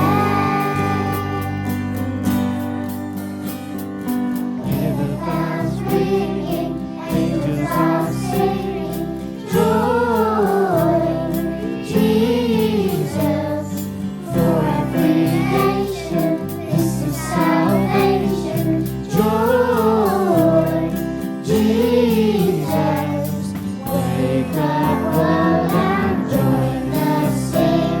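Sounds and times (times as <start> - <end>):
voices singing a worship song: 0.0 - 2.6, 4.5 - 28.0
backing music: 0.0 - 28.0.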